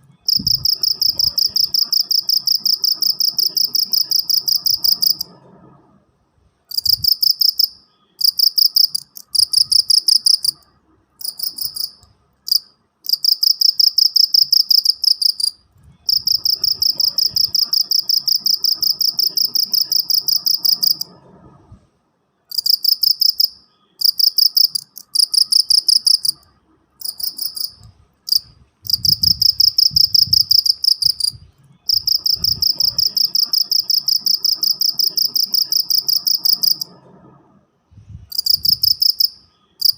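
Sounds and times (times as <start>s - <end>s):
cricket chirping trill: 0.1s - 5.4s, 6.7s - 21.2s, 22.5s - 37.1s, 38.3s - 39.9s.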